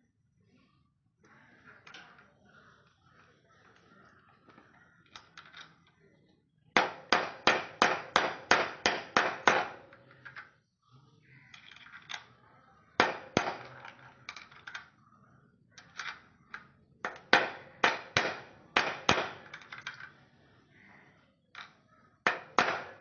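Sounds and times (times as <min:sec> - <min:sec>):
sharp metal knocks: 0:06.8 - 0:10.0, 0:17.0 - 0:19.9, 0:22.2 - 0:23.0.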